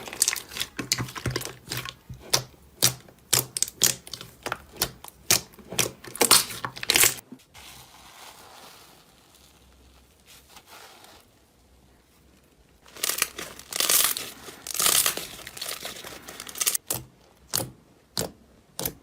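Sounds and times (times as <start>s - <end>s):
slime squishing with crackling pops: 0.0s - 7.2s.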